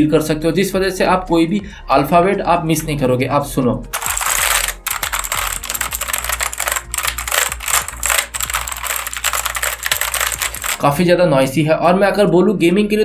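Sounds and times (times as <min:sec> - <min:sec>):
fast mechanical keyboard typing: 0:04.0 - 0:11.0.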